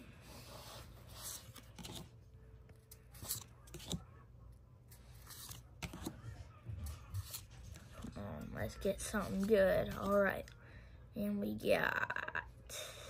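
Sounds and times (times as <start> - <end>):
cards clicking and snapping: 1.5 - 2.1, 2.8 - 4.1.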